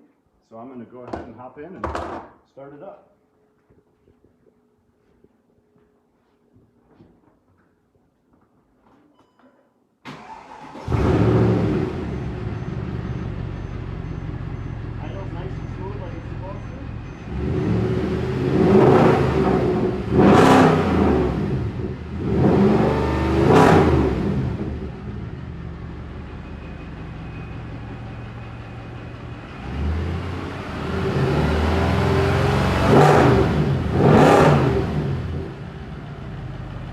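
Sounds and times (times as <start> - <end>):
car engine revving: 10.2 - 26.6, 28.6 - 36.6
car engine idling: 11.4 - 18.7, 24.2 - 31.1, 34.8 - 36.9.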